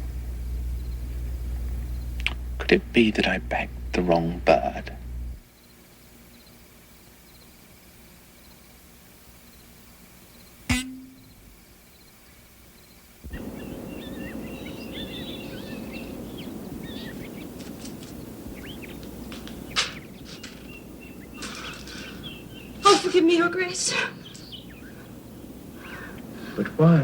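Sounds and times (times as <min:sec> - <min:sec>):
constant low noise: 0:00.0 - 0:27.0
small birds chirping: 0:00.7 - 0:04.7, 0:05.5 - 0:27.0
sharp strike with ringing tone: 0:10.7 - 0:11.6.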